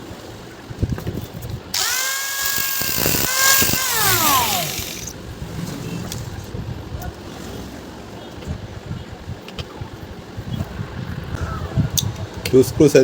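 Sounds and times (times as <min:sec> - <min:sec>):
power cutter whining: 0:01.8 - 0:05.1.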